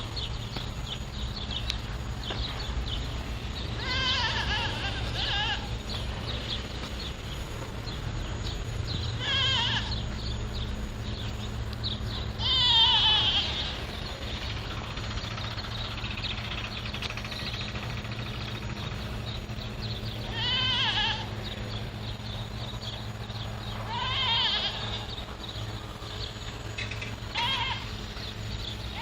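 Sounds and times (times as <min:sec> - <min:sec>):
animal bleating: 0:03.8 - 0:05.8, 0:09.2 - 0:10.0, 0:12.4 - 0:13.8, 0:20.2 - 0:21.4, 0:23.8 - 0:25.1, 0:27.3 - 0:28.0.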